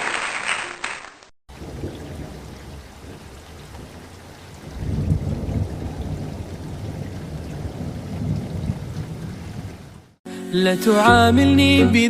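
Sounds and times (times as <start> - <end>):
rain: 0.0 - 10.2
low rumbling thunder: 1.5 - 10.1.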